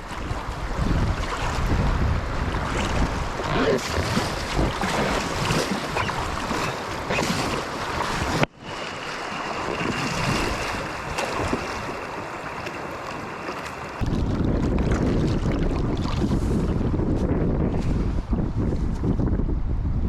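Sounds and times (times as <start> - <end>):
wind noise: 0.0 - 12.1, 13.9 - 20.0
stream water rushing: 0.0 - 14.2.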